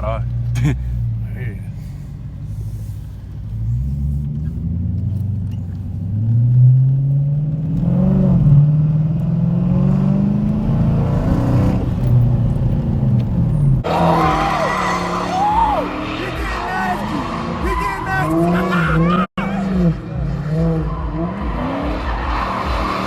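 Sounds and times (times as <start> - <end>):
car engine accelerating hard: 0.0 - 23.0
high sliding squeals: 13.9 - 16.7.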